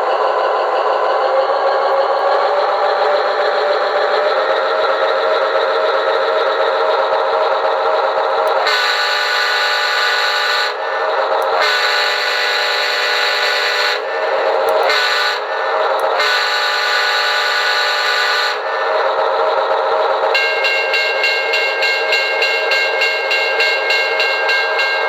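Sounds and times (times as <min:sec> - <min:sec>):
locomotive running: 0:00.0 - 0:25.0
locomotive air horn chord: 0:08.6 - 0:10.8, 0:11.6 - 0:14.2, 0:14.8 - 0:15.6, 0:16.2 - 0:18.8, 0:20.3 - 0:25.0.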